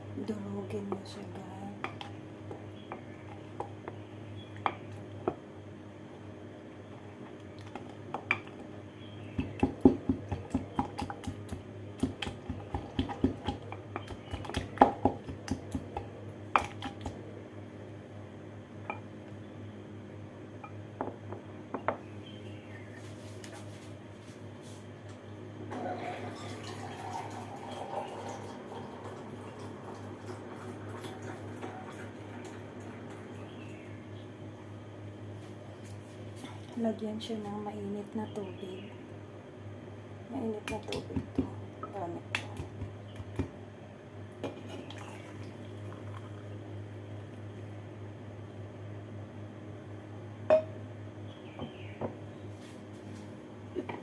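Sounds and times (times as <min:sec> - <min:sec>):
steady low hum: 0:00.0 - 0:26.4, 0:27.2 - 0:54.0
liquid trickling into a container: 0:25.8 - 0:32.8, 0:44.8 - 0:46.5.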